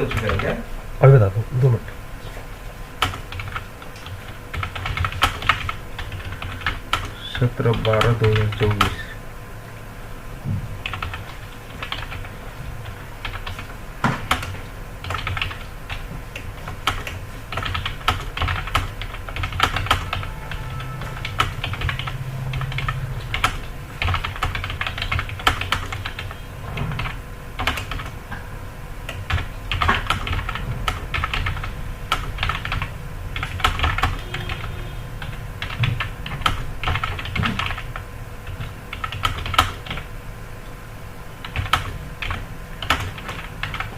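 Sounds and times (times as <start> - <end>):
fast typing on keyboard: 0.0 - 0.6, 3.0 - 9.1, 10.8 - 28.2, 29.1 - 40.1, 41.4 - 43.9.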